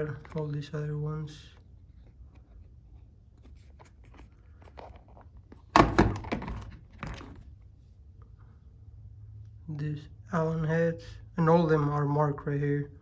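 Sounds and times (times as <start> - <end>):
loud knock on plastic case: 5.6 - 7.4.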